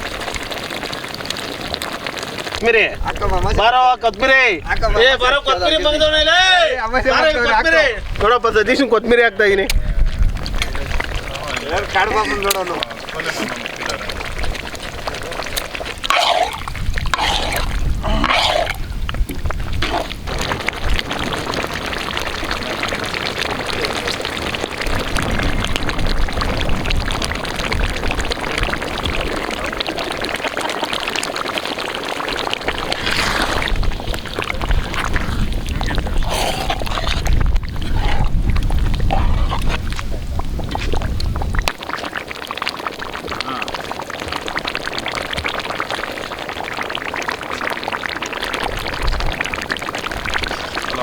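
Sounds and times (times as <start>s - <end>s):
chicken sizzling in a pot: 39.7s - 51.0s.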